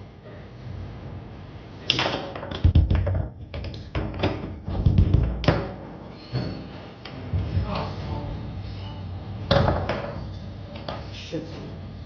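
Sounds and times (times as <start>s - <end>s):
foosball ball knocking: 1.9s - 5.8s, 9.5s - 10.2s
foosball rods clacking: 1.9s - 5.8s.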